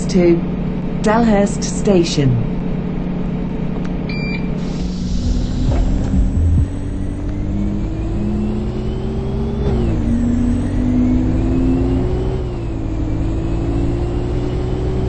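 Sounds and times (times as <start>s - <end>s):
bus drivetrain whine: 0.0s - 15.0s
steady low drone: 2.4s - 15.0s.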